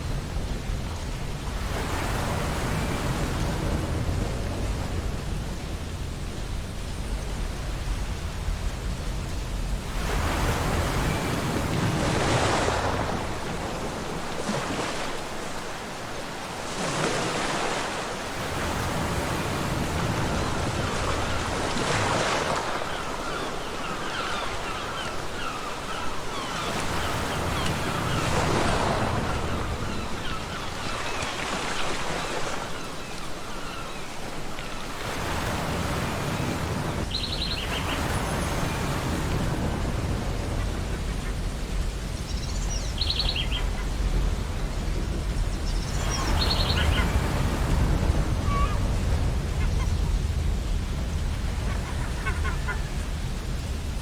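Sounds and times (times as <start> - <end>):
ocean surf breaking: 0.0 - 6.8, 7.4 - 54.0
seagull calls: 46.0 - 48.9, 51.6 - 53.0.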